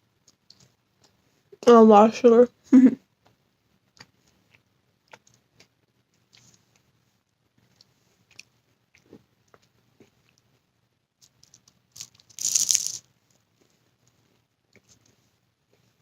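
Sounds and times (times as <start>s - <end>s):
mouth clicking and chewing: 7.7s - 10.4s
pastry crunch: 11.2s - 15.8s.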